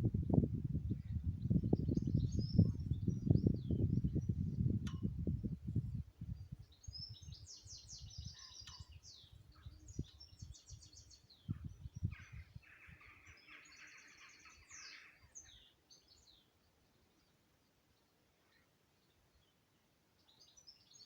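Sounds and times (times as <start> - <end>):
low rumbling: 0.0 - 6.4
songbirds trilling and chirping: 0.1 - 21.0.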